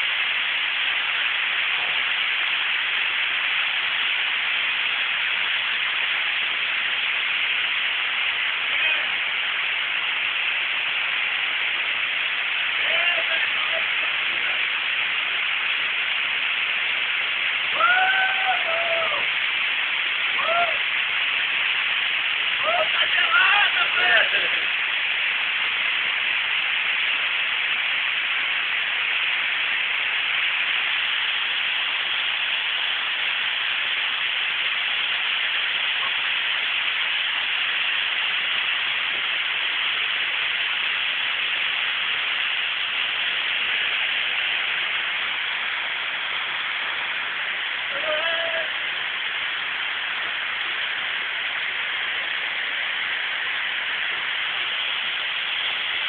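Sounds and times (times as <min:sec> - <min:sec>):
waterfall rushing: 0:00.0 - 0:56.0
short voice: 0:47.9 - 0:48.8.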